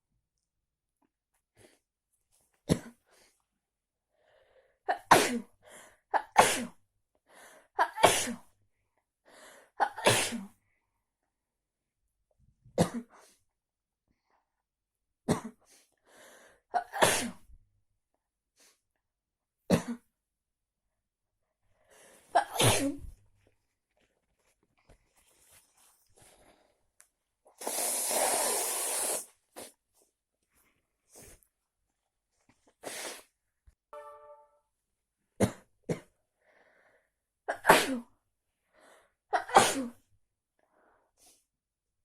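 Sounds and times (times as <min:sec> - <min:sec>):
person sneezing: 0:06.4 - 0:06.8, 0:07.8 - 0:08.4, 0:10.0 - 0:10.5, 0:16.9 - 0:17.4, 0:22.4 - 0:23.1, 0:37.5 - 0:38.1, 0:39.4 - 0:40.0.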